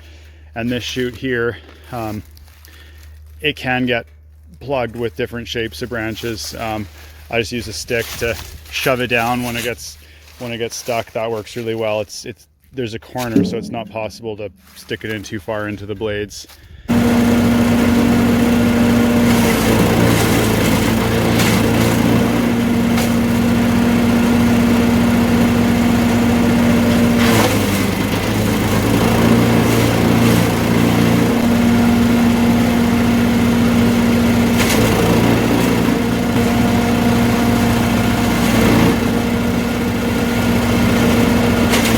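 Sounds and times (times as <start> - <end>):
branches cracking in chipper: 1.6 - 3.4, 16.9 - 30.5
chipper engine running: 16.9 - 41.9.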